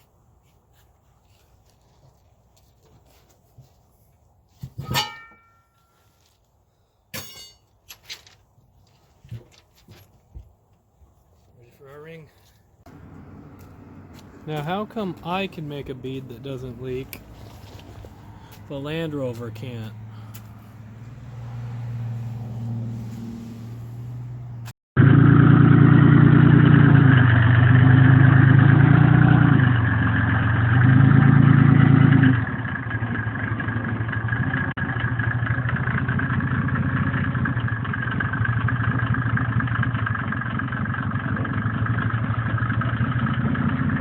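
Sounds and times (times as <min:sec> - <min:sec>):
vehicle engine revving and idling: 0:12.9 - 0:44.0.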